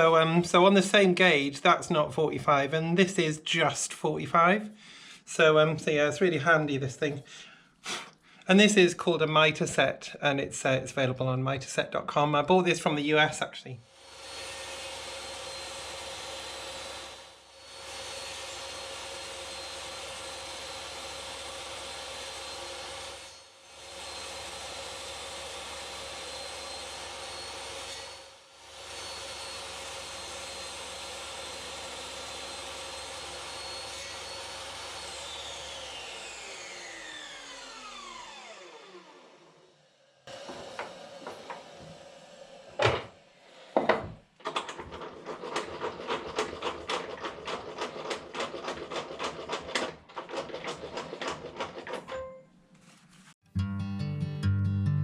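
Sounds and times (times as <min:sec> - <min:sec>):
power tool motor running: 0:13.9 - 0:44.0
motor winding down whine: 0:31.5 - 0:42.8.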